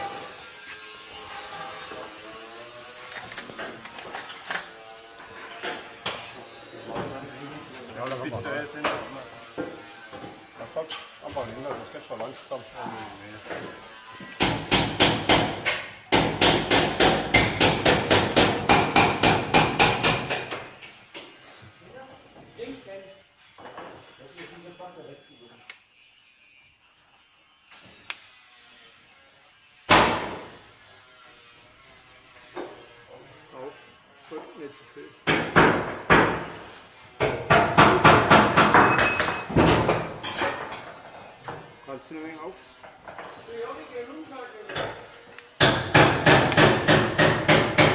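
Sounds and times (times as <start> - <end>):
high metallic ringing: 38.8 - 39.6.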